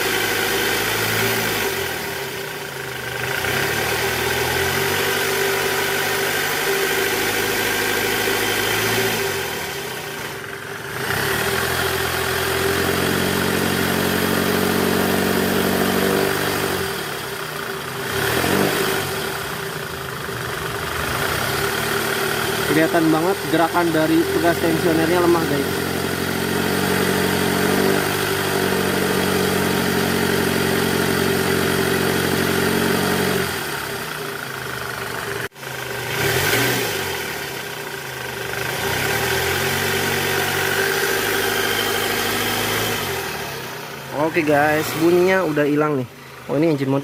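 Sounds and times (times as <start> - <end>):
car engine revving lightly: 38.8 - 47.0.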